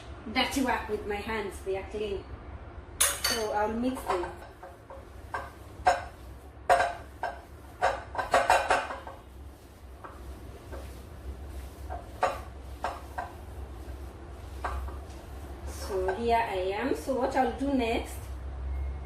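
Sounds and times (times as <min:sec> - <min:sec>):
mixing bowl clinking: 0:03.0 - 0:16.5.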